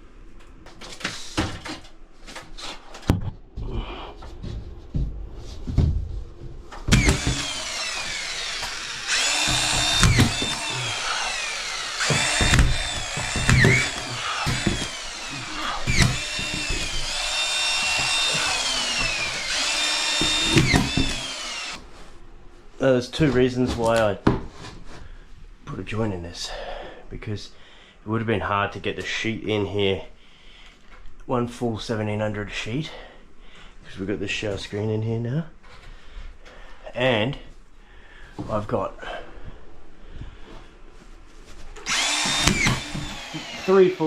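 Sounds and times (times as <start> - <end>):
knocks and handling: 0.3 - 21.8, 41.7 - 43.7
power drill whining: 6.9 - 21.8, 41.8 - 44.0.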